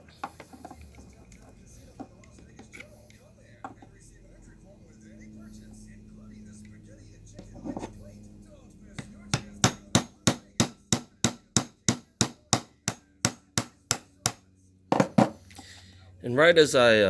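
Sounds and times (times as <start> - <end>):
hammer tapping knife blade: 9.0 - 14.4.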